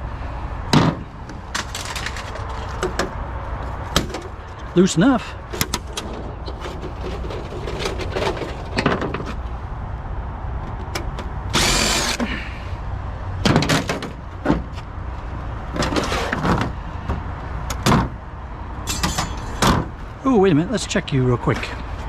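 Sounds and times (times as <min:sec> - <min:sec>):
metal parts clanking and rattling: 0:00.7 - 0:03.2, 0:05.5 - 0:09.4, 0:15.7 - 0:16.8, 0:18.8 - 0:20.0
power driver whirring: 0:11.5 - 0:12.2.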